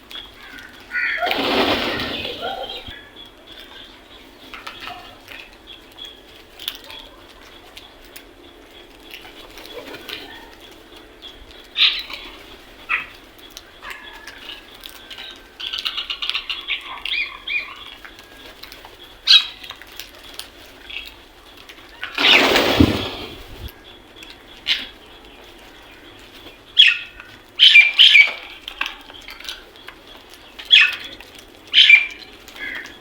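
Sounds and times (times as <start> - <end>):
birds chirping: 0.0 - 19.6, 20.2 - 28.3
crows calling: 0.3 - 3.1
loud rushing burst: 22.2 - 23.7.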